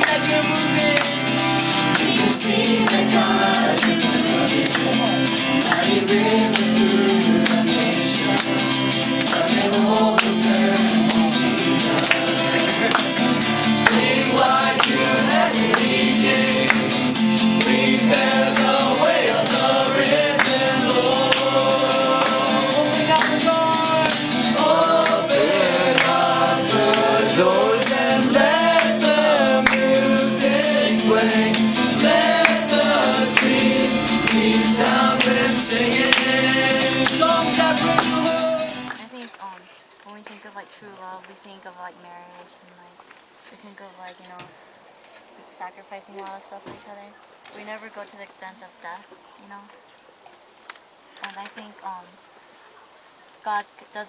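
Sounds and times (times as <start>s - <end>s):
worship song with instruments: 0.0s - 39.4s.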